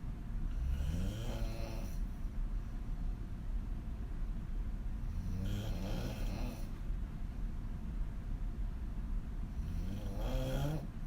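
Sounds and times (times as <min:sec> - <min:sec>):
woman snoring: 0:00.6 - 0:02.0, 0:05.2 - 0:06.7, 0:09.6 - 0:10.9.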